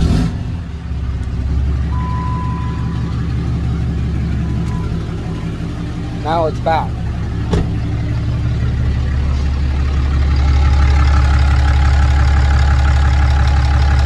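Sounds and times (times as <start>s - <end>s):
diesel engine idling: 0.0s - 14.0s
steady higher tone: 1.5s - 9.2s.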